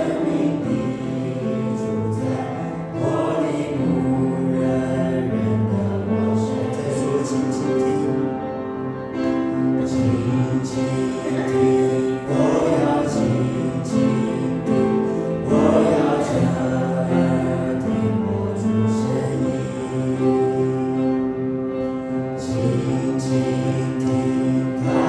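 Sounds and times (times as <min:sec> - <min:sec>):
hymn singing with instruments: 0:00.0 - 0:25.0.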